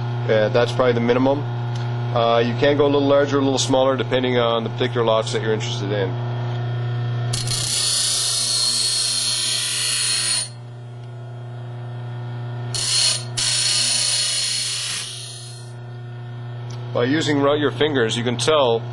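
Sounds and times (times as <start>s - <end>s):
bench grinder humming: 6.6s - 10.8s, 11.8s - 15.8s
metal blade grinding on wheel: 7.3s - 10.6s, 12.7s - 15.7s.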